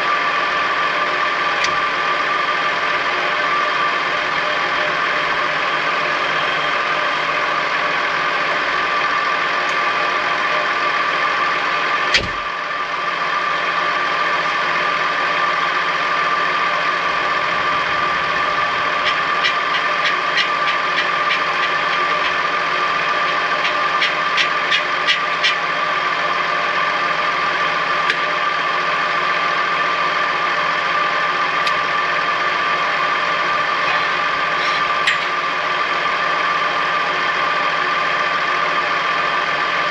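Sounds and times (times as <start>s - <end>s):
high whine: 0.0s - 39.9s
tractor engine under load: 16.2s - 25.6s.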